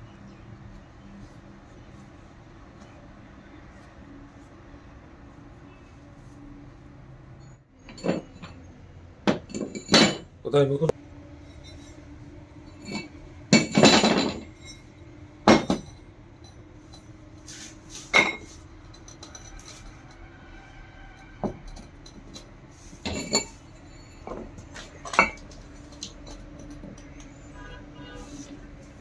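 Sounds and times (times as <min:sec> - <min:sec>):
metal parts clinking and knocking: 0:07.8 - 0:10.3, 0:11.6 - 0:17.2, 0:18.0 - 0:20.3, 0:21.2 - 0:27.3.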